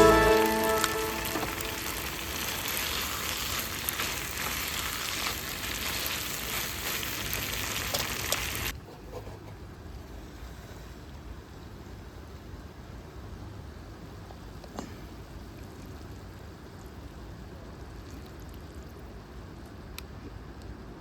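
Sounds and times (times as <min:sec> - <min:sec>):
food sizzling in a pan: 0:00.0 - 0:08.7.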